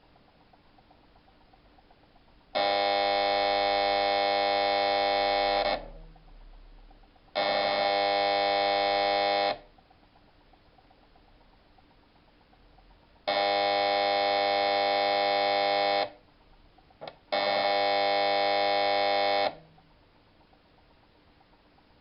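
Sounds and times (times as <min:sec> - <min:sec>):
electric door buzzer: 0:07.4 - 0:09.6, 0:13.3 - 0:16.2, 0:17.3 - 0:19.6.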